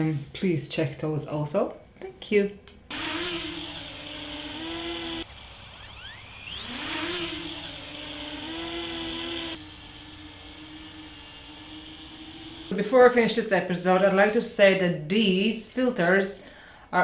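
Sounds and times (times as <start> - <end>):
drone motors whining: 2.9 - 12.8.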